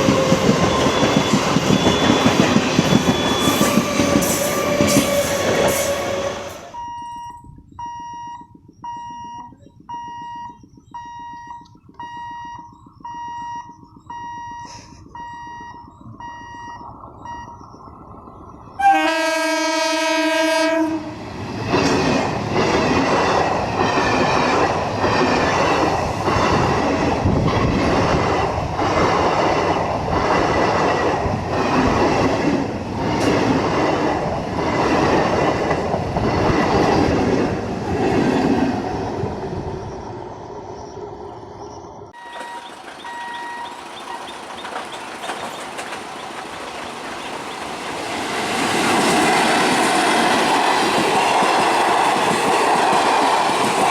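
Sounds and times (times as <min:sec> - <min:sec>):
train wheels clickety-clack: 0:00.0 - 0:06.6, 0:21.4 - 0:38.9, 0:42.2 - 0:53.9
locomotive horn blast: 0:18.8 - 0:21.2.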